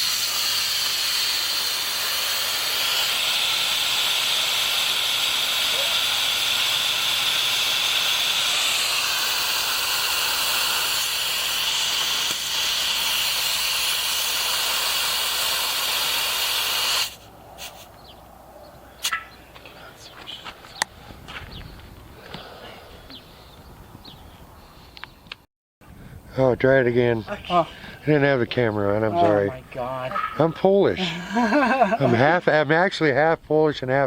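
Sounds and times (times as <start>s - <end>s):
water hissing from valve: 0.0s - 17.9s.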